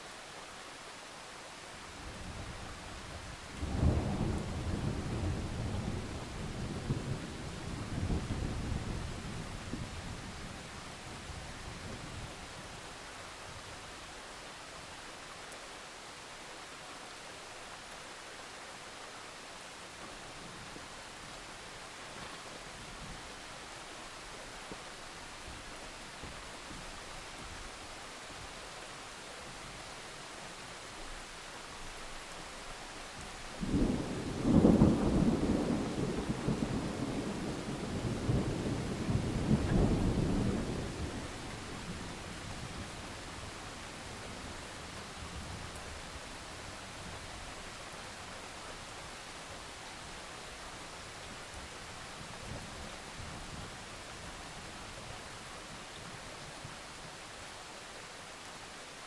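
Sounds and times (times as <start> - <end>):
steady rain falling: 0.0 - 59.0
thunder rumbling: 33.6 - 45.2.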